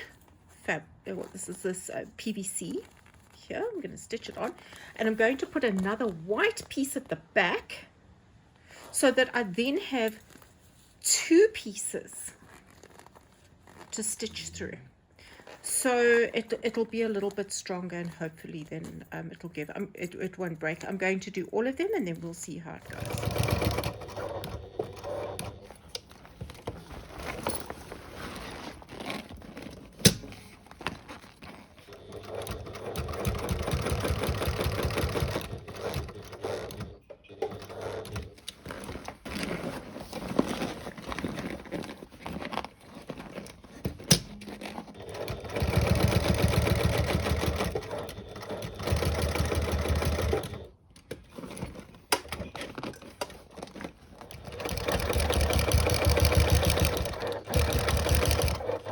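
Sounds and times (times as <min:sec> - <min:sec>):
sewing machine stitching: 0:22.8 - 0:30.4, 0:31.6 - 0:41.7, 0:42.4 - 0:58.9.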